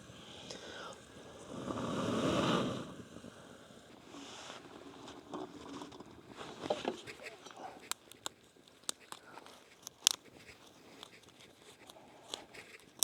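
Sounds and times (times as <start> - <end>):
rush of air noise: 0.0 - 4.6
faint crackles and clicks: 0.5 - 13.0.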